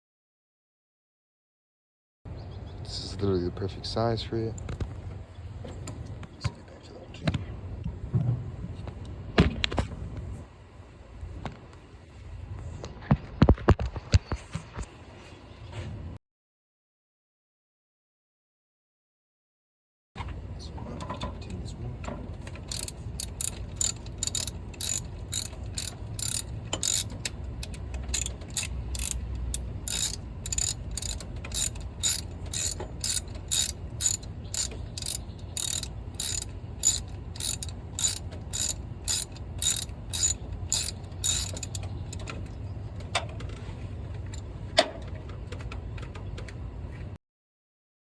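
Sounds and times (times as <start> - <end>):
ratchet wrench clicking: 22.5 - 42.4.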